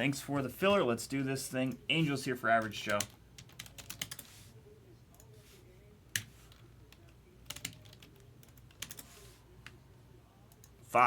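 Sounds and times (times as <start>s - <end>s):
keyboard typing: 2.9s - 4.4s, 6.1s - 9.2s.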